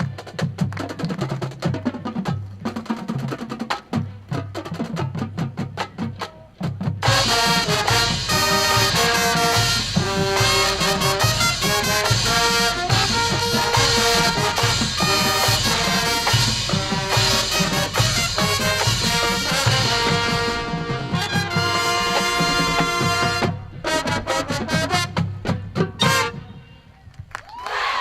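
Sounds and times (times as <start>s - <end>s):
drumline drumming: 0.0s - 26.4s
marching band playing: 0.0s - 26.9s
brass section chords: 7.0s - 26.9s.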